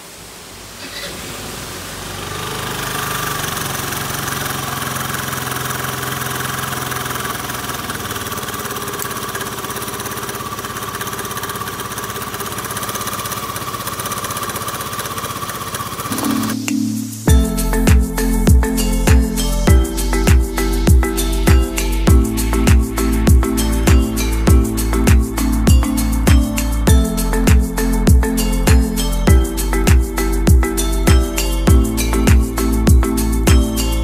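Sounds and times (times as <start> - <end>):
scooter engine with abnormal noise: 0.6 - 16.6.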